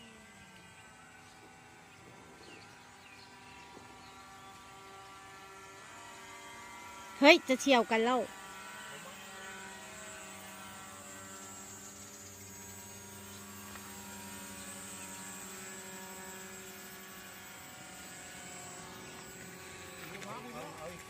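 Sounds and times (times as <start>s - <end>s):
model aircraft motors droning: 0.0s - 21.0s.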